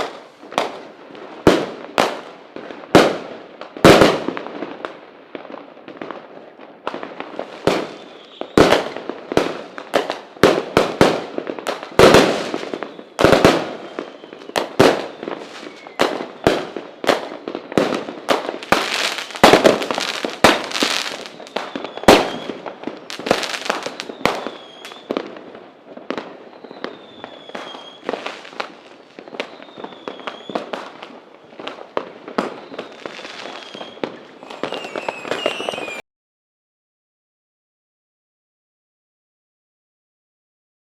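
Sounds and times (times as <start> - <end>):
fireworks bangs: 0.0 - 36.0
fireworks crackling: 0.0 - 36.0
faint fireworks whistles: 5.4 - 36.0.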